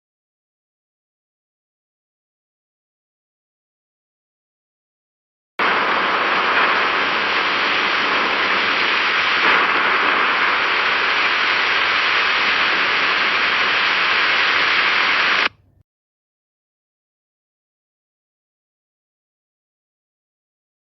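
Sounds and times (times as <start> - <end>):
heavy rain falling: 5.6 - 15.6.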